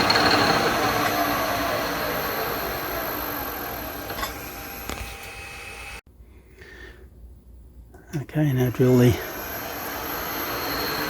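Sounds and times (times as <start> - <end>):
high whine: 0.0 - 6.0, 8.2 - 11.0
milling machine spindle hum: 0.0 - 6.0, 8.7 - 11.0.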